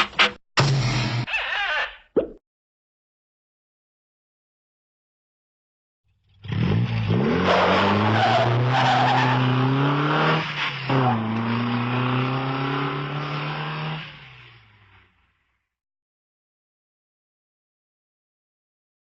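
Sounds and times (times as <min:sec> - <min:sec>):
car engine revving: 0:06.3 - 0:15.0.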